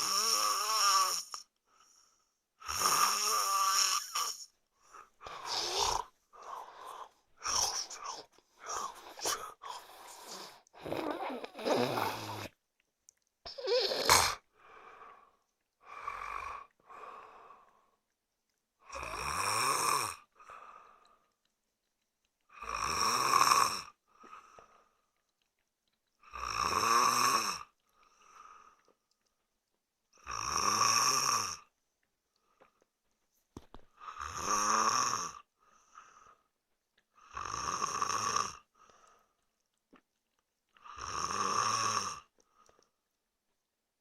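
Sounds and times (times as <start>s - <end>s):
man snoring: 0.0s - 1.4s, 2.6s - 4.5s, 5.3s - 6.6s, 7.4s - 12.5s, 13.5s - 14.4s, 18.9s - 20.3s, 22.6s - 24.0s, 26.3s - 27.7s, 30.2s - 31.7s, 34.0s - 35.4s, 37.3s - 38.7s, 40.8s - 42.3s.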